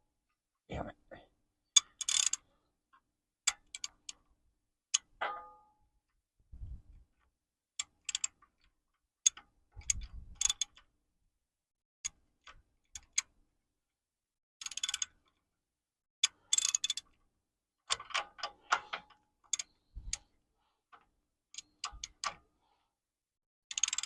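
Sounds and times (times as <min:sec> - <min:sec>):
ratchet wrench clicking: 0:01.8 - 0:02.4, 0:16.5 - 0:17.0, 0:23.7 - 0:24.0.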